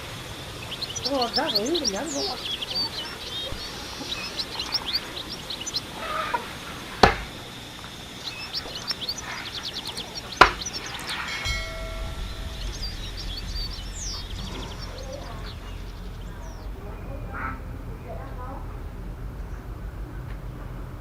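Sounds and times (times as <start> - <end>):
small birds chirping: 0.0 - 21.0
chicken clucking: 0.6 - 11.8
sharp knocks: 7.0 - 7.4, 10.4 - 16.8.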